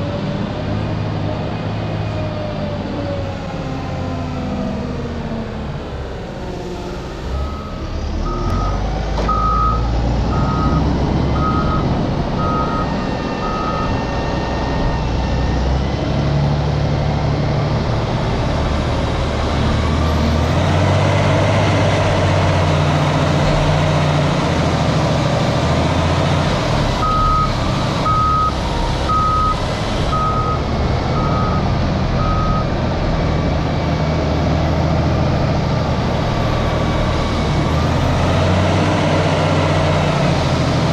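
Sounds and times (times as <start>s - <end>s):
diesel engine under load: 0.0s - 40.9s
reversing alarm beeps: 7.4s - 14.0s, 27.0s - 31.6s, 32.2s - 32.7s.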